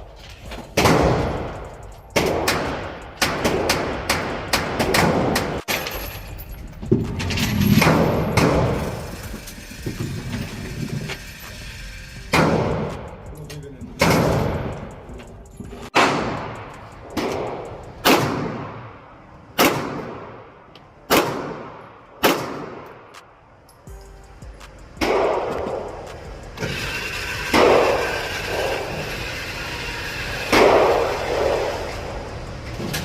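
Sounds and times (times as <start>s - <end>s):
echoing gunshots: 0.8s - 1.6s, 16.0s - 20.5s, 21.1s - 23.1s, 25.0s - 25.9s.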